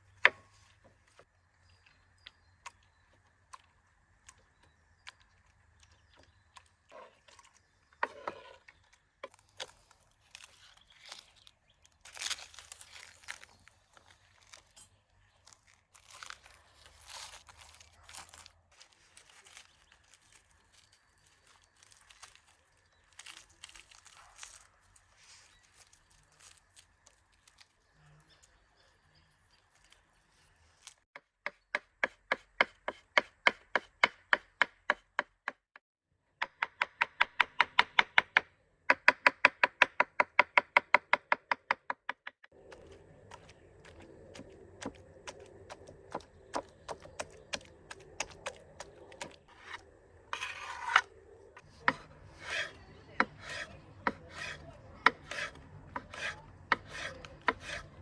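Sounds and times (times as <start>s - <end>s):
faint crackling and rustling: 4.3s - 31.1s.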